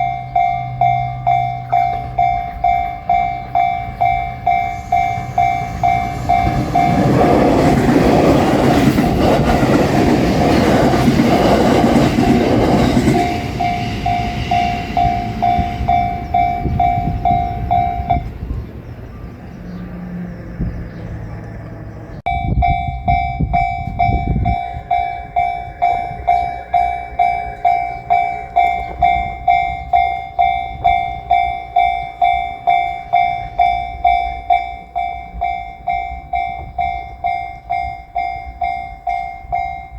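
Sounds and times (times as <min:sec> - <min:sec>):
crossing warning bell ringing: 0:00.0 - 0:20.6, 0:21.6 - 0:39.9
low rumble: 0:00.0 - 0:31.8
train running over crossing: 0:00.0 - 0:39.9.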